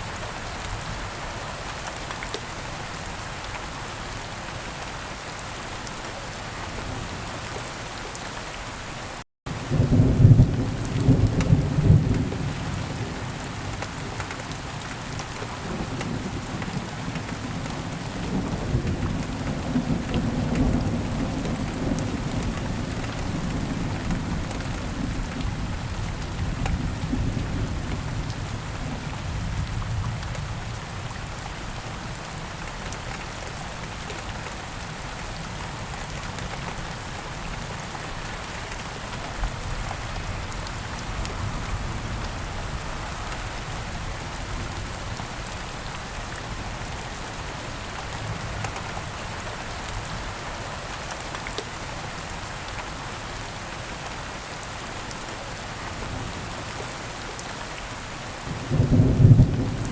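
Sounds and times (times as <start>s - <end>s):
steady rain falling: 0.0s - 59.9s
low thunder rumble: 58.4s - 59.9s.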